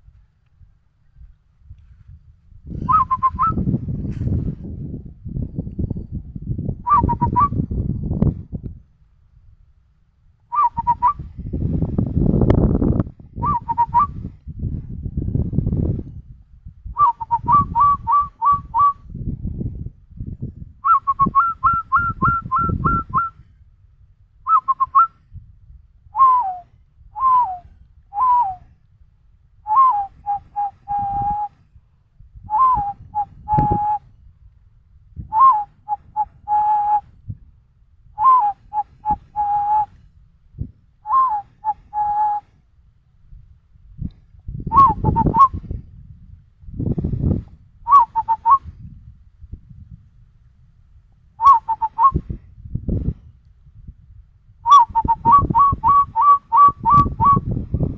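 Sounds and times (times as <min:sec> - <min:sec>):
person whistling bird call: 0:02.8 - 0:03.7, 0:06.9 - 0:07.8, 0:10.5 - 0:11.3, 0:13.4 - 0:14.2, 0:17.0 - 0:19.0, 0:20.8 - 0:23.4, 0:24.5 - 0:25.1, 0:26.2 - 0:28.6, 0:29.7 - 0:31.6, 0:32.5 - 0:34.1, 0:35.3 - 0:37.1, 0:38.2 - 0:40.0, 0:41.1 - 0:42.5, 0:44.7 - 0:45.6, 0:47.9 - 0:48.6, 0:51.4 - 0:52.2, 0:54.6 - 0:57.5.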